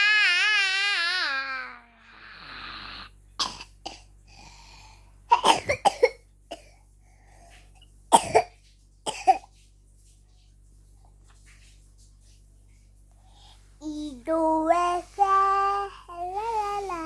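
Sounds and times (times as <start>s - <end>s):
child coughing: 3.4s - 4.1s, 5.3s - 6.7s, 8.1s - 9.5s.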